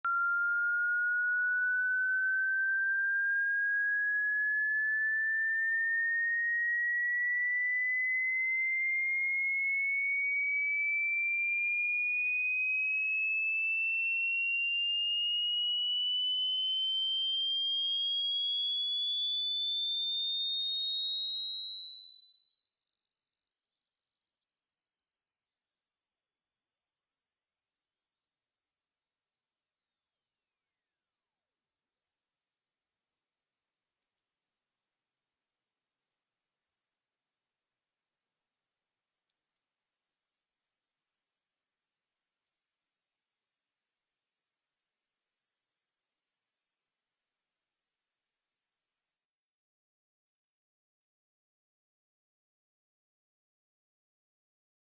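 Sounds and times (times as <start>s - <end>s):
sine tone rising in pitch: 0.0s - 43.7s.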